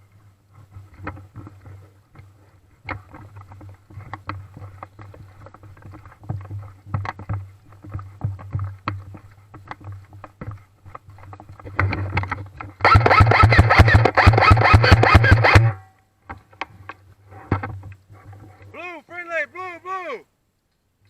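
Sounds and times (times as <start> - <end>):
rapid airsoft gunfire: 12.8 - 15.8.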